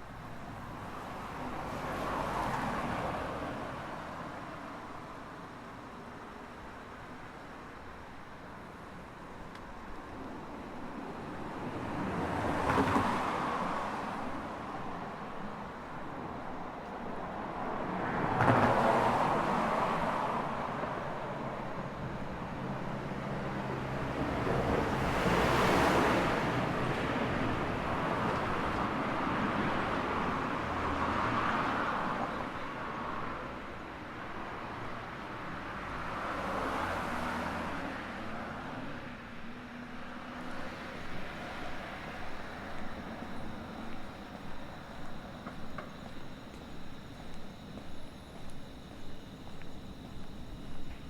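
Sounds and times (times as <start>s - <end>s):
road traffic passing: 0.0s - 51.0s
faint low hum: 40.5s - 51.0s.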